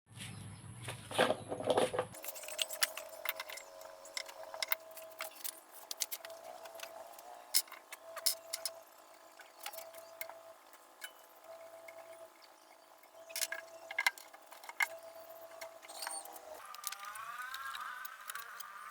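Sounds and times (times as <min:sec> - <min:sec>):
faint hum: 0:02.2 - 0:18.9
small clicks and metallic clinks: 0:02.2 - 0:18.9.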